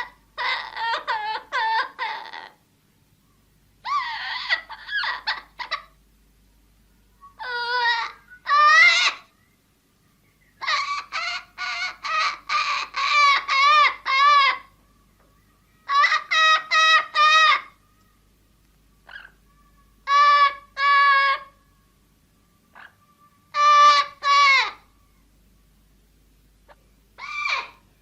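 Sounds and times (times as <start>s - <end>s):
parrot calling: 0.0s - 2.6s, 3.8s - 6.0s, 7.2s - 9.4s, 10.4s - 14.8s, 15.4s - 17.9s, 19.0s - 21.7s, 22.7s - 25.0s, 26.7s - 27.9s.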